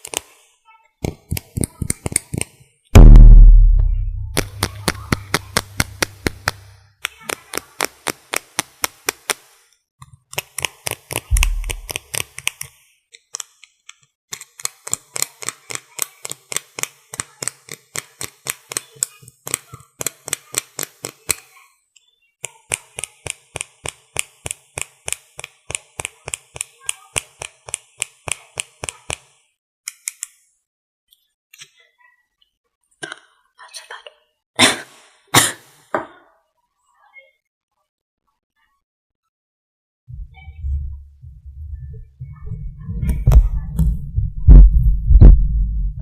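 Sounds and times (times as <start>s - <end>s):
low thump: 3.0s - 4.6s, 41.7s - 46.0s.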